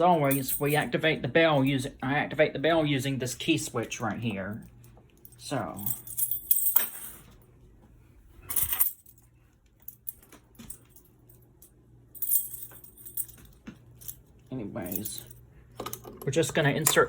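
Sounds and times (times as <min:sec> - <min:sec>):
metal keys clattering: 0:00.1 - 0:00.9, 0:04.5 - 0:07.4, 0:08.4 - 0:16.2
keys jangling: 0:05.3 - 0:07.2, 0:08.5 - 0:09.2, 0:12.2 - 0:14.3.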